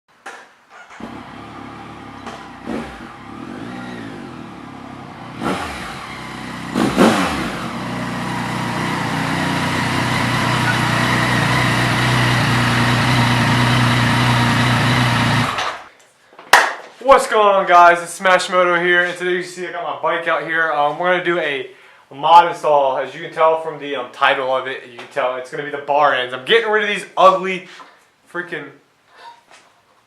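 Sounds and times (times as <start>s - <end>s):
motorcycle engine revving: 0.9s - 15.9s.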